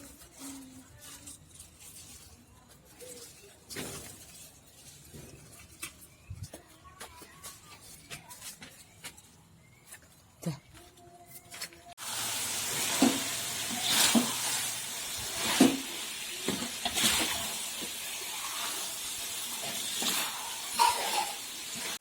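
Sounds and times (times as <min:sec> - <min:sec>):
food sizzling in a frying pan: 0:12.0 - 0:22.0
spatula stirring: 0:12.5 - 0:22.0.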